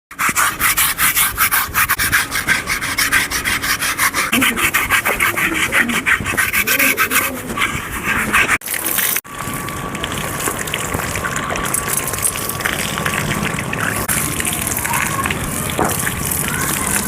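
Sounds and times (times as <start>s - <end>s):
brush scrubbing horse's coat: 0.2s - 8.6s.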